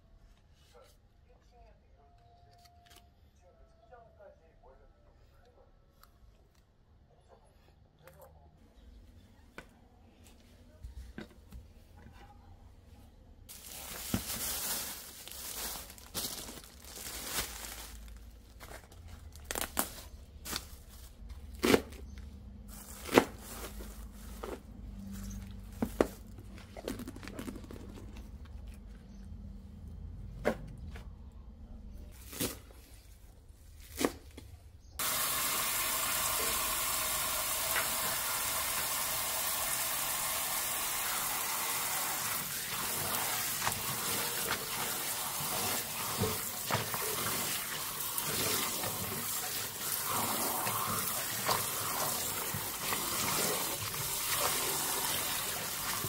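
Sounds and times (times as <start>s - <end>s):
tap water running into sink: 35.0s - 56.0s.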